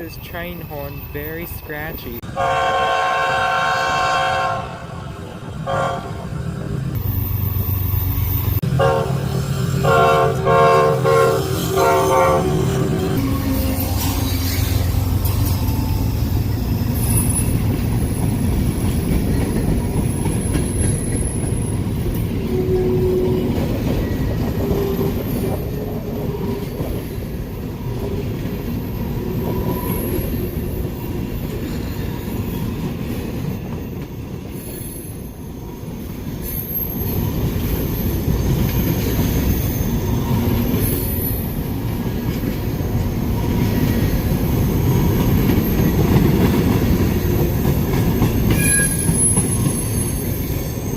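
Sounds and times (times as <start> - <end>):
train cars rumbling on rails: 0.0 - 50.9
high wheel squeal: 11.4 - 17.7, 48.3 - 50.9.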